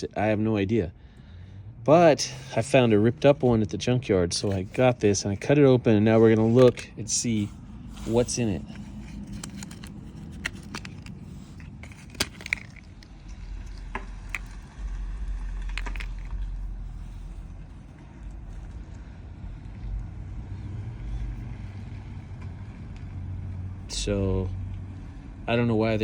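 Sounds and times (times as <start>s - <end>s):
steady low rumble: 0.0s - 26.0s
plastic box clicks and rattles: 9.2s - 13.0s.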